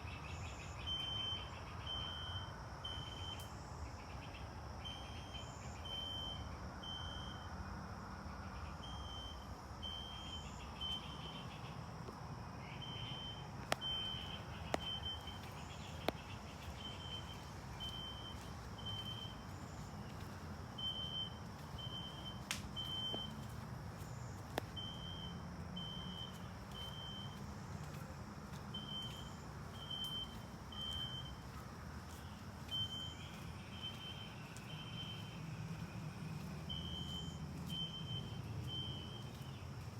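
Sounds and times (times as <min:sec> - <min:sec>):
fire alarm horn beeps: 0:00.5 - 0:03.6, 0:04.8 - 0:07.6, 0:08.8 - 0:11.5, 0:12.8 - 0:16.1, 0:16.7 - 0:19.9, 0:20.8 - 0:27.4, 0:28.8 - 0:31.5, 0:32.7 - 0:35.4, 0:36.7 - 0:39.6.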